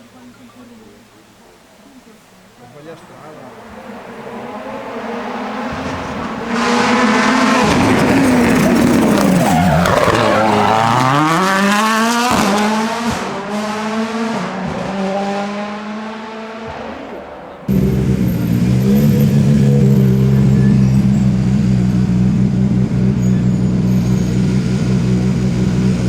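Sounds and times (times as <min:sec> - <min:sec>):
rally car engine at high revs: 0:03.0 - 0:26.0
sharp exhaust cracks: 0:17.2 - 0:26.0.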